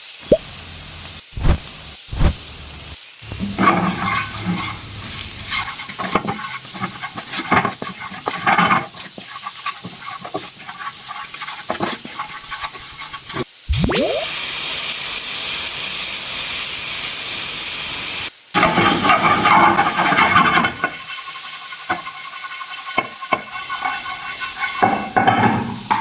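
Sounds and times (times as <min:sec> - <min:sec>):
food sizzling in oil: 0:00.0 - 0:26.0
short rising pops: 0:00.2 - 0:05.6
stirring and scraping in pan: 0:00.2 - 0:13.6, 0:18.6 - 0:26.0.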